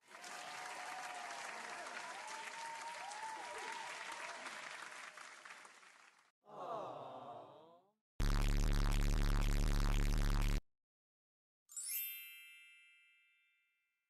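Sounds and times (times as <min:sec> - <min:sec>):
crowd clapping and cheering: 0:00.0 - 0:06.3.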